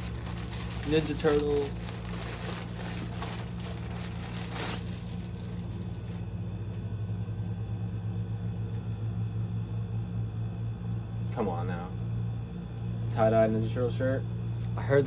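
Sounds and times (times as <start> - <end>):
packaging and fabric rustling: 0.0 - 6.2
air conditioner humming: 0.0 - 15.0.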